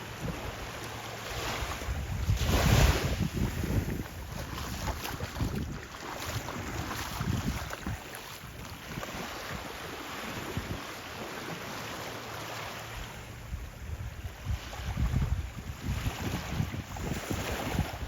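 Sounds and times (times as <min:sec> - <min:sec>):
sea waves washing on sand: 0:00.0 - 0:18.0
wind buffeting microphone: 0:01.4 - 0:11.0, 0:13.4 - 0:18.0.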